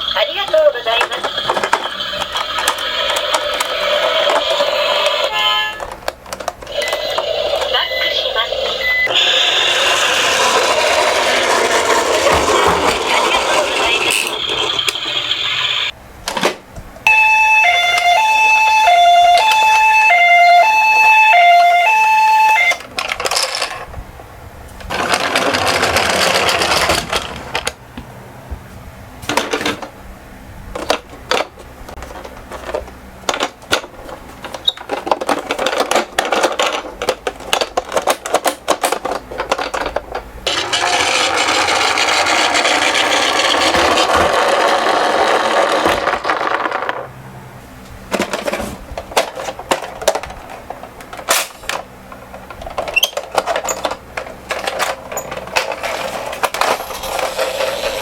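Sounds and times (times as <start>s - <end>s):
toy cars clicking and rattling: 0.0s - 8.0s, 9.0s - 15.9s, 22.7s - 23.9s, 24.9s - 27.8s, 30.8s - 47.1s, 48.1s - 58.0s
toy electronic hi-lo siren: 3.9s - 5.9s, 17.1s - 22.8s
small wheels rolling rumble: 9.0s - 15.9s, 24.8s - 27.8s, 39.0s - 47.1s.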